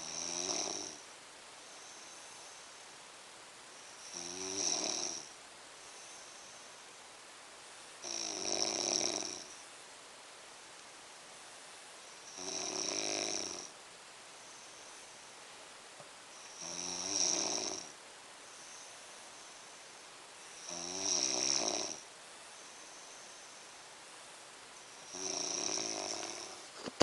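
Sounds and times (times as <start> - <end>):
loud snores: 0.0 - 1.0, 4.0 - 5.4, 8.0 - 9.6, 12.3 - 13.7, 16.4 - 18.0, 20.6 - 22.1, 25.0 - 27.0
faint breathing: 22.4 - 23.9.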